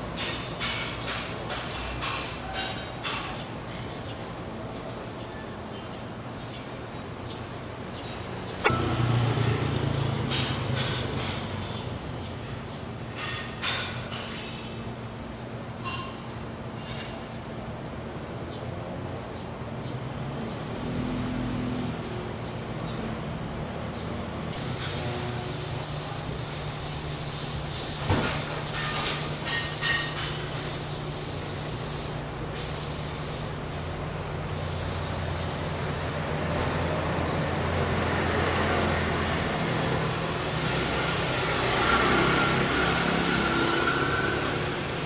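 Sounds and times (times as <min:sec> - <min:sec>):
engine hum: 0:08.3 - 0:12.6
hiss: 0:24.5 - 0:33.8, 0:34.4 - 0:37.0, 0:41.4 - 0:45.0.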